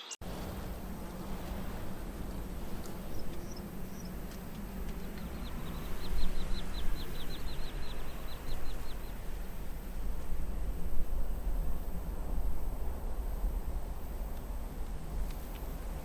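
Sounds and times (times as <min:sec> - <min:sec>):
steady low rumble: 0:00.2 - 0:16.0
bird chirping: 0:04.9 - 0:09.2.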